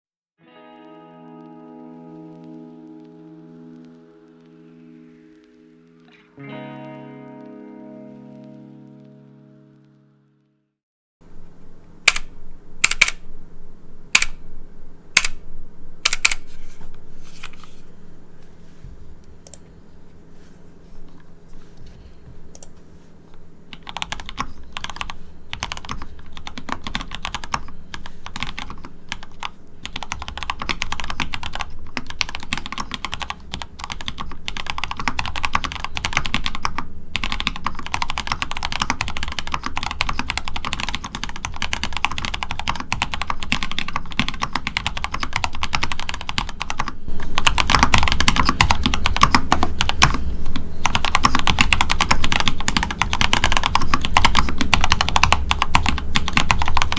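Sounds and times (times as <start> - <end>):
typing on mechanical keyboard: 12.1 - 13.2, 14.2 - 14.4, 16.0 - 16.5, 23.7 - 50.2, 50.8 - 56.9.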